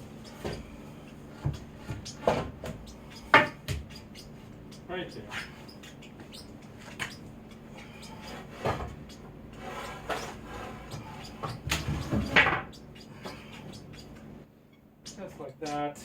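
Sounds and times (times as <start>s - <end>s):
wooden boards knocking and scraping: 1.4s - 3.8s, 8.4s - 9.0s, 9.6s - 12.7s.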